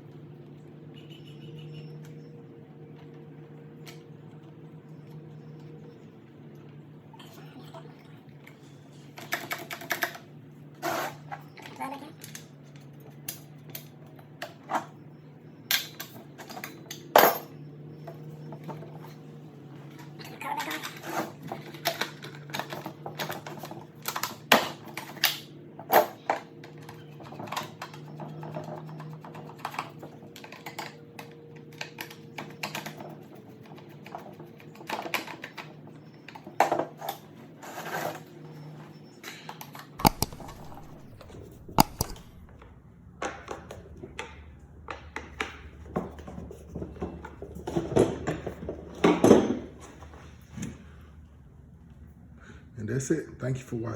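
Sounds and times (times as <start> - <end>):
steady low hum: 38.3 - 53.9
hand tools clicking and clinking: 40.0 - 42.6.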